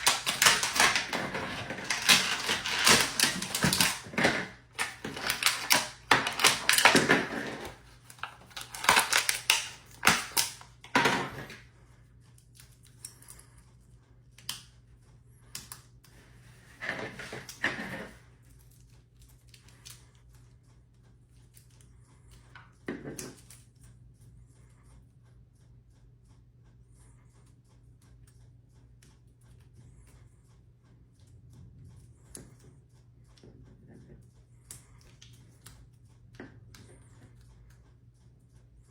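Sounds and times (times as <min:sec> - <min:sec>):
packaging crackling and tearing: 0:00.0 - 0:10.6.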